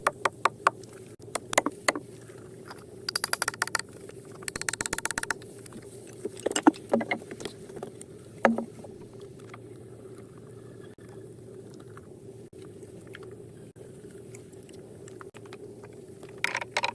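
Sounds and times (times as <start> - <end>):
steady low hum: 0.0 - 16.9
rapid rattling clicks: 3.1 - 5.5.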